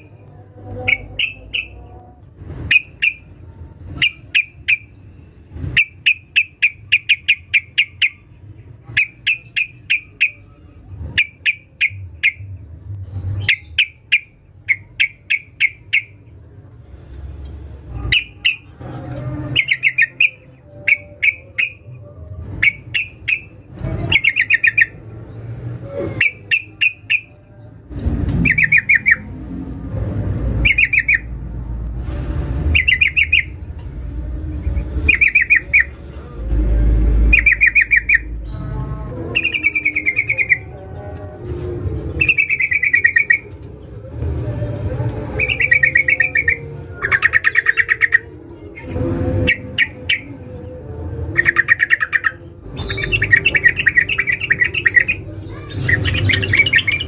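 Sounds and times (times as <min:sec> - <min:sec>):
bird chattering calls: 0:00.9 - 0:01.8, 0:37.3 - 0:38.6
low rumble: 0:27.5 - 0:39.5.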